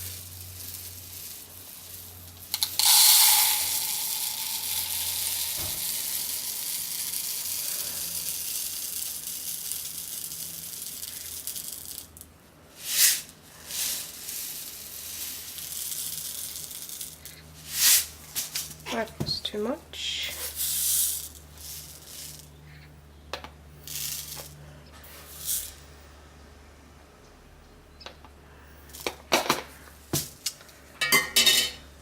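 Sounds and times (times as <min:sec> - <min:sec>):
granules pouring with hissing rattle: 0:00.0 - 0:19.1, 0:20.3 - 0:22.8, 0:23.8 - 0:26.1.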